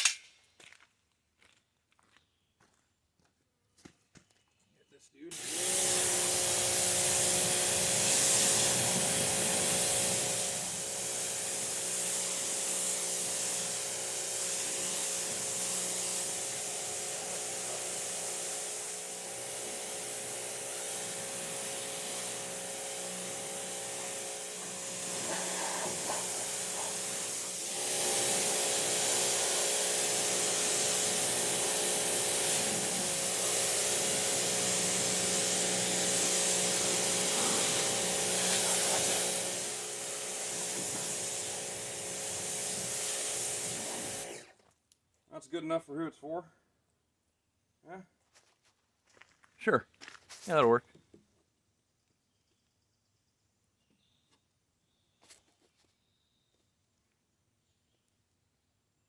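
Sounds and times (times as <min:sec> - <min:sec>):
loud hiss: 0:05.3 - 0:44.4.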